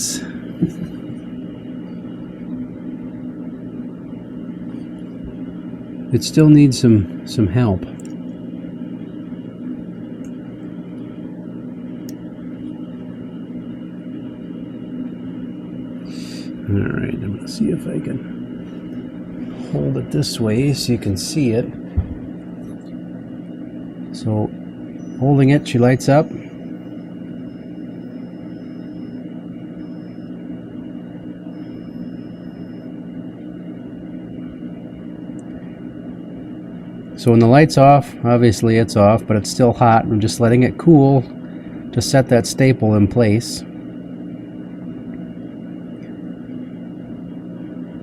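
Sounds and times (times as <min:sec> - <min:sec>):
faint high whine: 0:00.0 - 0:48.0
low mechanical hum: 0:00.0 - 0:48.0.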